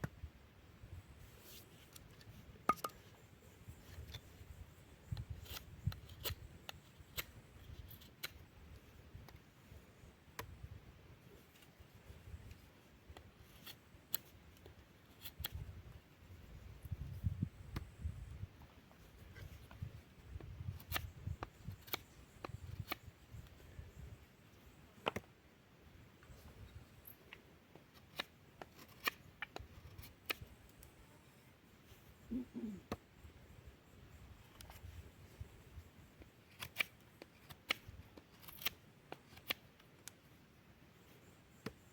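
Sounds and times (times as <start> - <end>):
knife carving wood: 1.2 - 10.6, 11.2 - 23.6, 26.2 - 31.0, 34.3 - 40.2.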